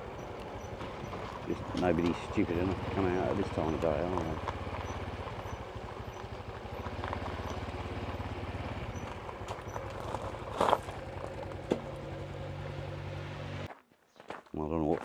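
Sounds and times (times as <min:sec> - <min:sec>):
motorcycle engine ticking over: 0:00.0 - 0:13.0
short clunks: 0:11.6 - 0:12.1.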